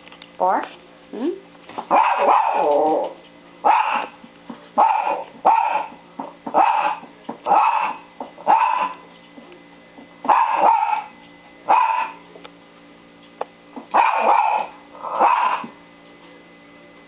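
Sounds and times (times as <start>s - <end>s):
dog barking: 1.9s - 3.0s, 3.6s - 4.2s, 4.8s - 9.0s, 10.2s - 11.1s, 11.7s - 12.2s, 13.9s - 15.7s.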